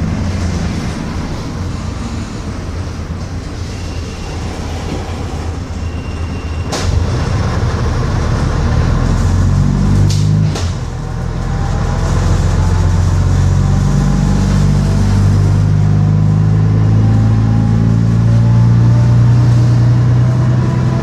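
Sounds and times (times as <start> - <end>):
bus diesel engine running: 0.0 - 21.0.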